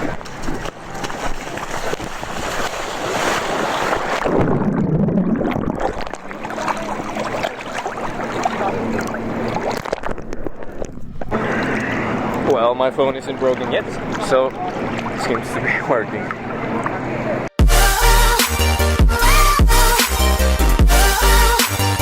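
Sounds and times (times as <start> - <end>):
water sloshing and splashing: 0.0 - 17.5.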